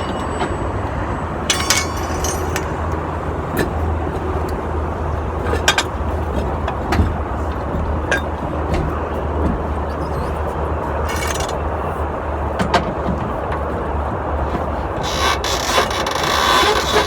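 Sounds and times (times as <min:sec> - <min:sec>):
vehicle engine humming: 0:00.0 - 0:15.1
metallic clicks and clinks: 0:01.5 - 0:03.1.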